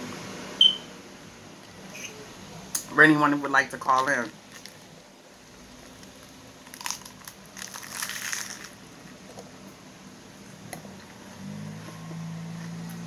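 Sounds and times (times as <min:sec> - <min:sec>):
person chewing crisp food: 0:05.6 - 0:09.5.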